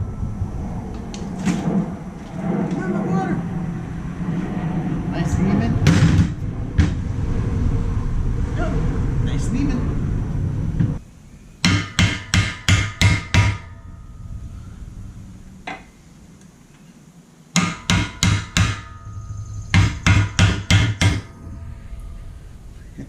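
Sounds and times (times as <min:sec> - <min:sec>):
low rumble: 0:00.0 - 0:11.6, 0:13.0 - 0:16.7, 0:18.1 - 0:23.0
hammer striking metal plate: 0:11.6 - 0:14.4, 0:17.6 - 0:22.8.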